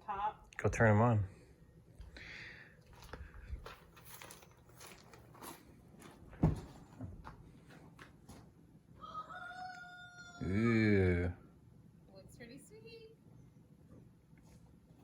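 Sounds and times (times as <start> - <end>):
footsteps: 2.8 - 8.6.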